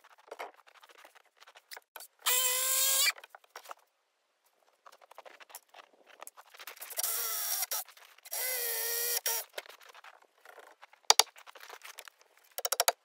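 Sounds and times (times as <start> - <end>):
sharp clicks and knocks: 11.1 - 11.3, 12.6 - 13.0.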